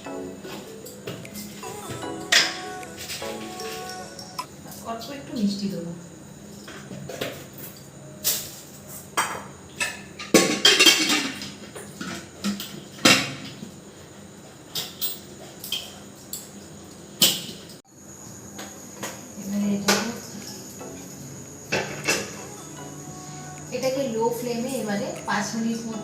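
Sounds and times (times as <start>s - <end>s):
metal utensils clinking on pot: 10.3s - 11.5s.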